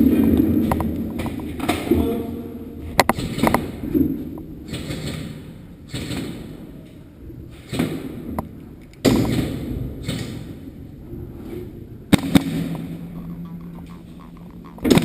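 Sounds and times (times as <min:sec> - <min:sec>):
airsoft gun single shots: 0:12.1 - 0:12.8.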